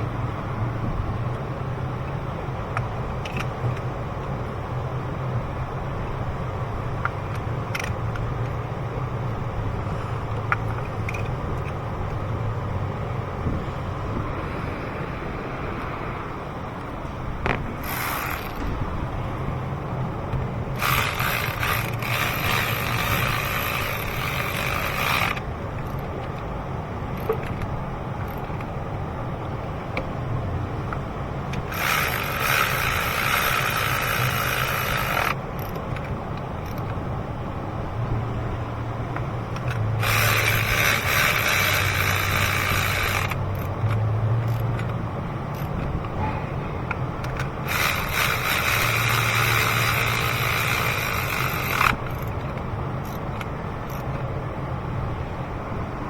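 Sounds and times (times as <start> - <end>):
steady low hum: 0.0 - 56.0
ratchet wrench clicking: 7.0 - 8.6, 10.3 - 12.2, 17.4 - 18.8, 20.3 - 26.4, 27.1 - 28.7, 30.9 - 37.0, 39.2 - 45.9, 46.9 - 54.2.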